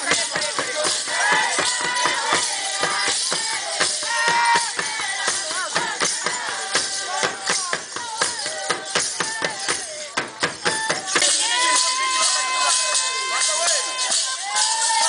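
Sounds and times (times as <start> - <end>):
steady drum strikes: 0.0 - 11.4
jingling rattle: 0.0 - 15.0
voices singing or chanting: 0.0 - 15.0.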